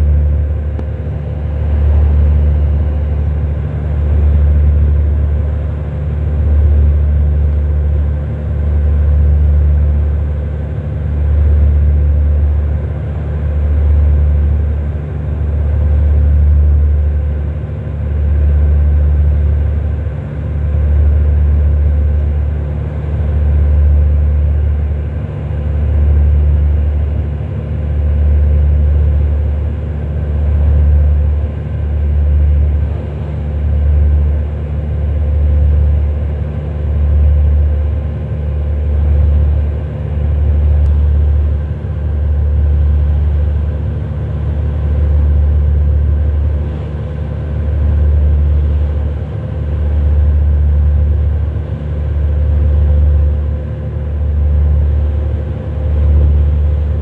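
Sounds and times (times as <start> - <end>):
low engine drone: 0.0 - 57.0.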